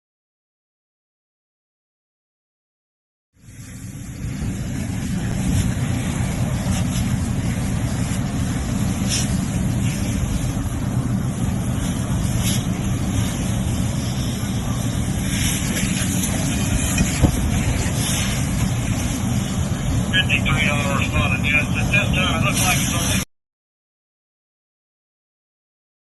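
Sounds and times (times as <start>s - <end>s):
fire rumbling: 3.4s - 23.2s
fire popping: 3.5s - 23.2s.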